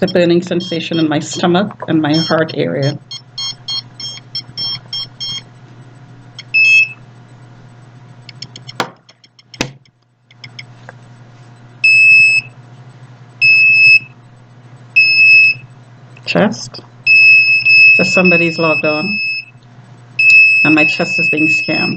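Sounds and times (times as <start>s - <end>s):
electronic meter beeping: 0.0s - 5.5s, 6.3s - 7.0s, 8.3s - 9.6s, 11.8s - 12.6s, 13.4s - 14.2s, 15.0s - 15.7s, 17.0s - 19.6s, 20.2s - 21.9s
sharp clicks: 8.3s - 10.7s.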